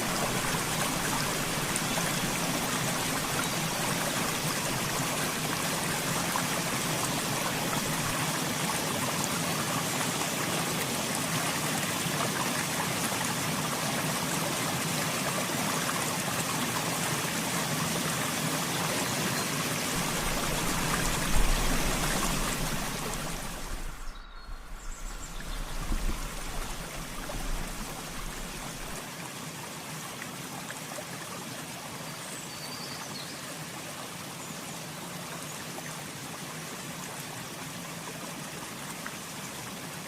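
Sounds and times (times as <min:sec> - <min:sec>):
river water rushing: 0:00.0 - 0:31.4
low rumble: 0:20.0 - 0:29.0.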